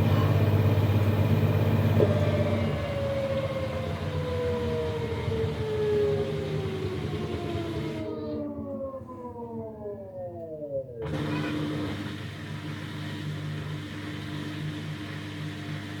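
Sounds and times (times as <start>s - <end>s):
washing machine drum spinning down: 0.0s - 8.1s
washing machine low hum: 0.0s - 16.0s.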